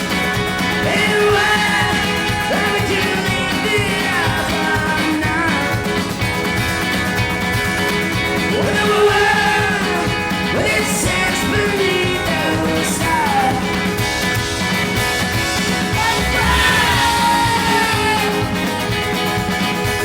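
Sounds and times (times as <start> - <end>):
rock band playing: 0.0 - 20.0
person singing: 0.4 - 6.3, 8.4 - 14.1, 15.8 - 19.2.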